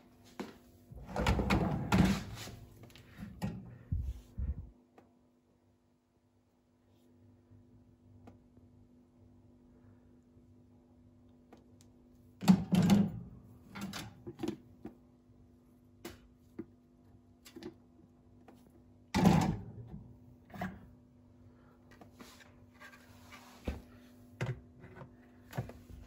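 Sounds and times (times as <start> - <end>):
dishwasher racks clattering: 1.0 - 2.6, 19.2 - 19.7.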